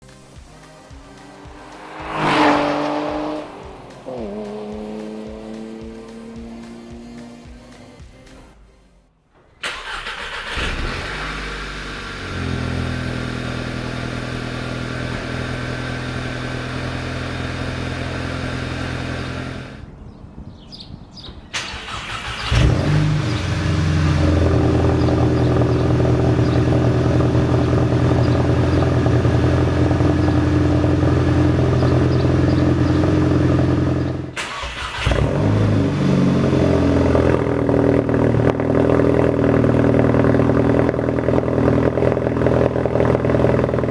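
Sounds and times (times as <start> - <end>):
car engine idling through exhaust: 10.9 - 20.0, 22.5 - 34.4, 35.0 - 43.9.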